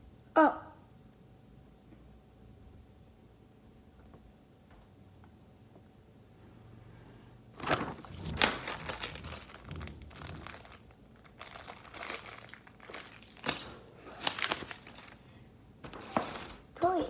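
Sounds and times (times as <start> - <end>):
packaging crinkling: 7.6 - 15.3, 15.9 - 16.6.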